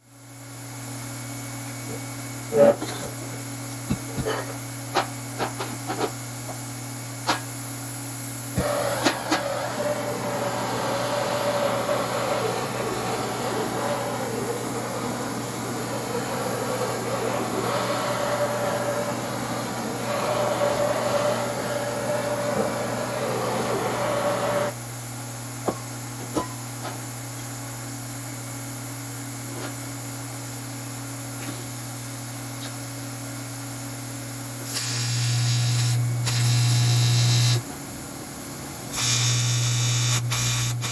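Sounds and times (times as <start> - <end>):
electrical hum of equipment: 0.0 - 40.9
loud buzz: 34.7 - 37.6, 39.0 - 40.9.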